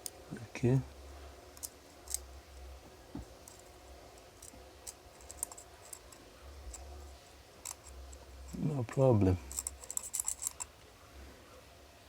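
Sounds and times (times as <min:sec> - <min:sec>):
small tools clicking and tapping: 0:03.2 - 0:06.9, 0:07.6 - 0:08.6, 0:09.5 - 0:10.7.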